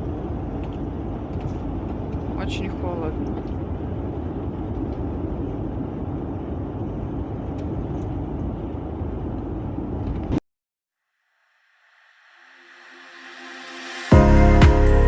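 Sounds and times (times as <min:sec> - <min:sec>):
van road and engine noise: 0:00.0 - 0:10.4.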